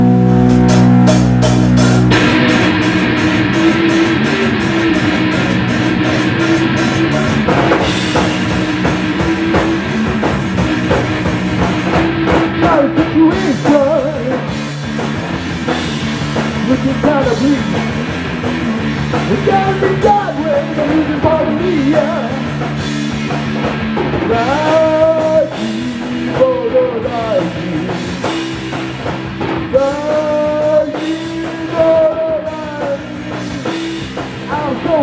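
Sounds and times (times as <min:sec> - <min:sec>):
rock band playing: 0:00.0 - 0:35.0
person singing: 0:12.4 - 0:14.6, 0:16.6 - 0:17.9, 0:19.3 - 0:22.6, 0:24.3 - 0:28.2, 0:29.7 - 0:33.8, 0:34.5 - 0:35.0.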